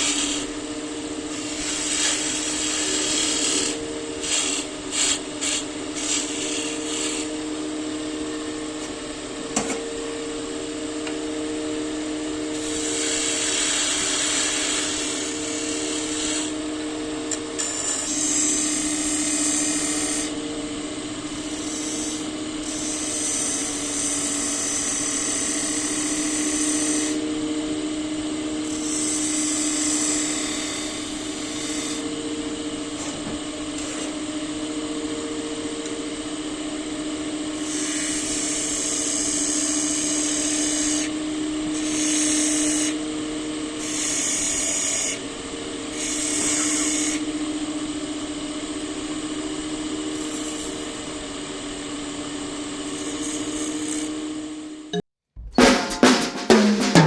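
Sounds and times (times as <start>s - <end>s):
wood lathe humming: 0.0s - 7.3s, 12.6s - 16.5s
tool hissing on spinning wood: 0.0s - 7.4s, 12.6s - 16.6s.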